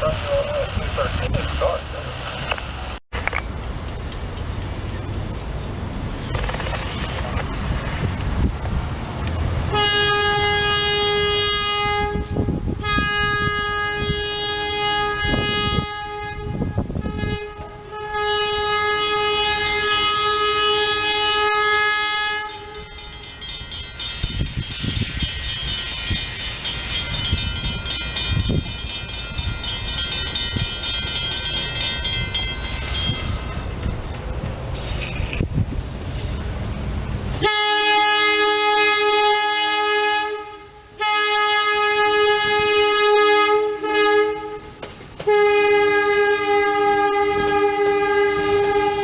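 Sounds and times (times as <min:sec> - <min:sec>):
train air horn blasts: 0:09.7 - 0:23.1, 0:37.4 - 0:49.0
train wheels clattering over rails: 0:44.8 - 0:45.4.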